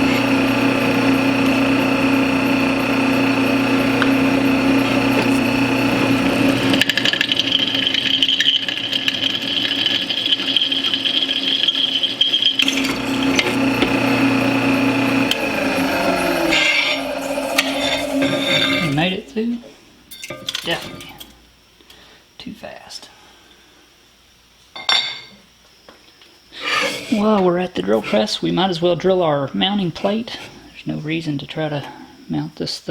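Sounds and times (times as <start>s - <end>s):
high steady whine: 0.0s - 8.8s
drill bit drilling into metal: 0.0s - 19.1s
drill press motor running: 0.0s - 19.1s.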